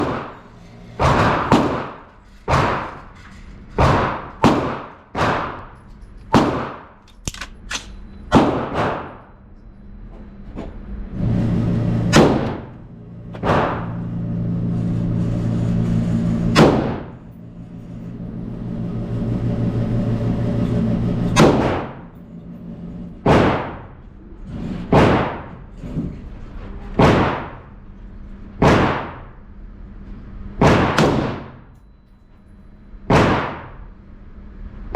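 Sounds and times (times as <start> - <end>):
rifle shots: 6.4 - 9.2, 30.6 - 31.5, 33.1 - 33.8.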